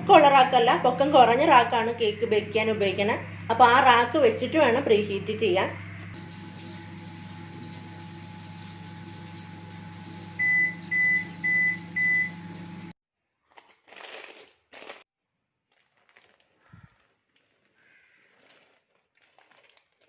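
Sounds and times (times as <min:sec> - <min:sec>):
microwave oven humming: 0:00.0 - 0:13.0
handling noises: 0:15.7 - 0:20.0.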